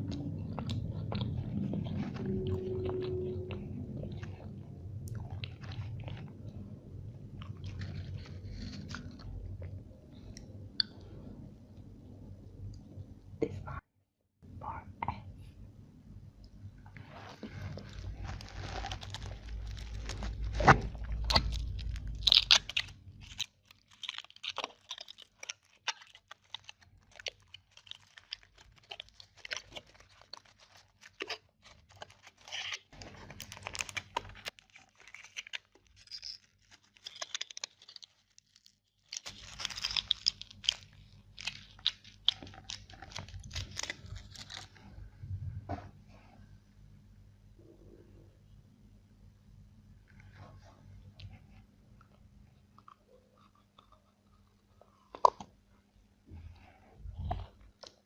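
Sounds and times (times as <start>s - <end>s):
chocolate crunching and chewing: 0.0s - 11.2s, 17.5s - 45.0s, 52.0s - 55.6s, 56.6s - 58.0s.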